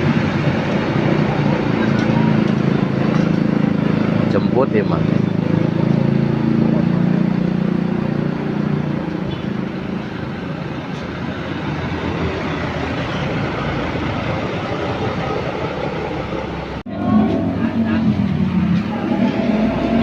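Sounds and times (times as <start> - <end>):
bus engine humming: 0.0 - 20.0
traffic noise: 0.0 - 20.0.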